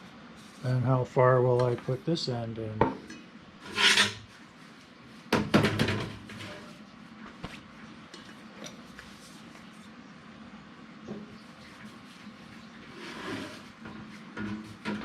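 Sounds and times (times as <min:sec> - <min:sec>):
duct pipe scraping: 0:03.6 - 0:04.3, 0:12.9 - 0:15.0
knocks and rattles of duct pipe: 0:05.3 - 0:06.5, 0:13.9 - 0:15.0.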